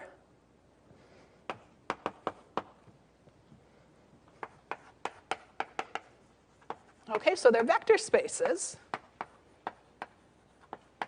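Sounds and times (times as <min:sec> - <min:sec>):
chalk tapping on blackboard: 0:01.5 - 0:02.8, 0:04.3 - 0:07.4, 0:08.4 - 0:11.0.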